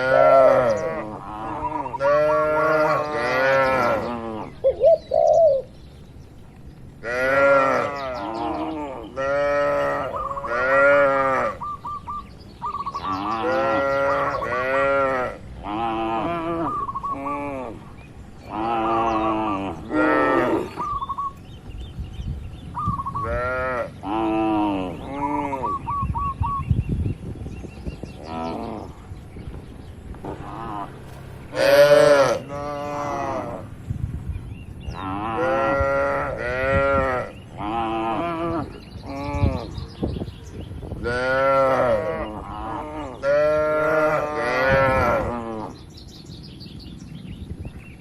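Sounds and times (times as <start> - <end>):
cattle mooing: 0.0 - 4.5, 7.0 - 11.6, 18.5 - 20.8, 30.3 - 33.7, 34.9 - 39.8, 41.0 - 45.8.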